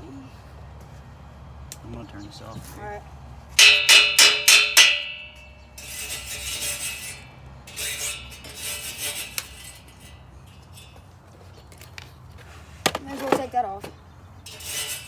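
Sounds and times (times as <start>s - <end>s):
metal strikes ringing: 3.6s - 8.5s
metal scraping: 3.6s - 13.5s, 14.4s - 15.0s.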